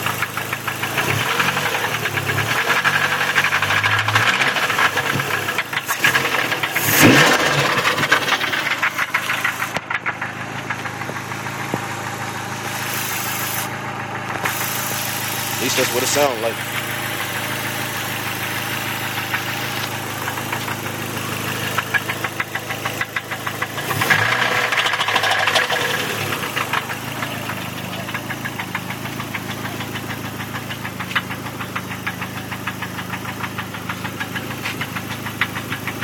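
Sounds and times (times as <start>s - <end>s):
car engine idling with knock: 0.0s - 36.0s
engine revving: 0.0s - 36.0s.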